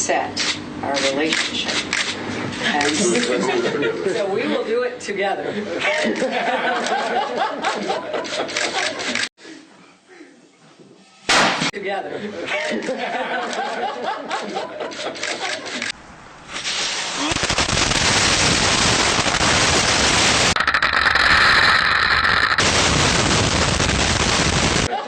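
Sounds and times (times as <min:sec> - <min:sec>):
voices: 0:02.6 - 0:06.4
gunfire: 0:11.3 - 0:11.7
explosions: 0:16.8 - 0:24.9.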